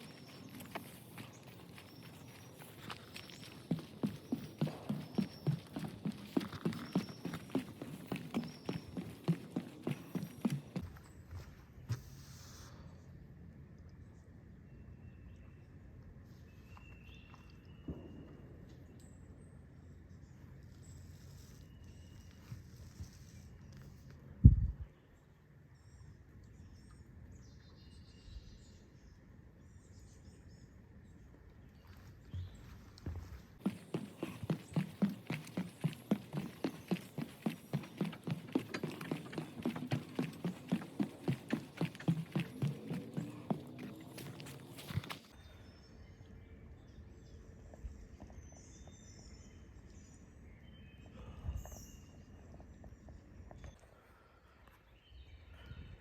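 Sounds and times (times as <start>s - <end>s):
footsteps on bridge deck: 0.0s - 12.2s, 31.9s - 45.4s.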